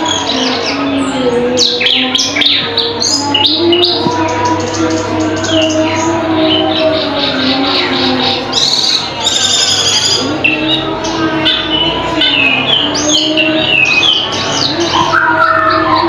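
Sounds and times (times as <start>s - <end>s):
bird singing whistles and chirps: 8.5s - 10.2s.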